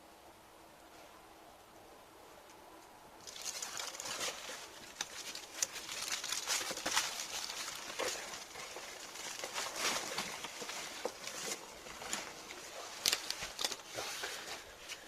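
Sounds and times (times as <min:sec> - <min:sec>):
paper crumpling and rustling: 0:03.2 - 0:15.0.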